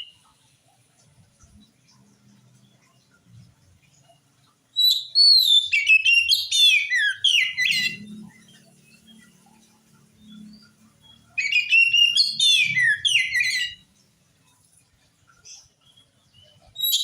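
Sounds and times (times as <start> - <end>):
bird singing whistled notes: 0.0 - 0.3, 4.8 - 9.4, 10.2 - 14.0, 15.9 - 17.0.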